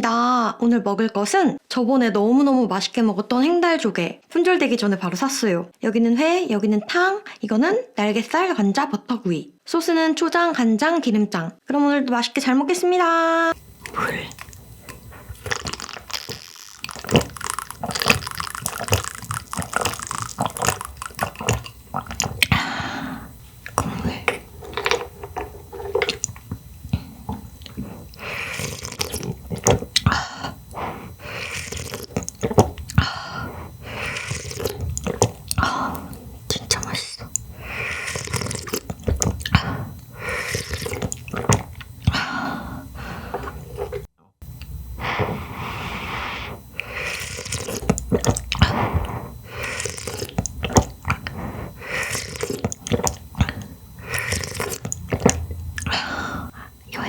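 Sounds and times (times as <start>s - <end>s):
slurping broth: 13.5s - 44.1s, 45.0s - 57.0s
wet chewing: 13.5s - 57.0s
sharp mouth clicks: 13.6s - 42.2s, 46.4s - 57.0s.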